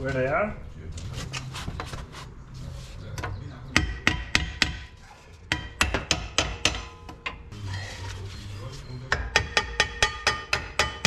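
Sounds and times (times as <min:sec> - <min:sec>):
hammer striking metal drum: 0:05.5 - 0:07.0, 0:09.1 - 0:11.0.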